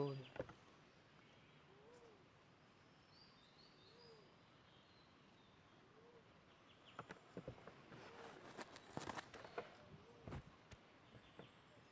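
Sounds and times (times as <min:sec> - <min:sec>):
low bird calls: 0:00.0 - 0:02.4, 0:03.0 - 0:11.9
soft clicks and rustles: 0:06.9 - 0:11.6.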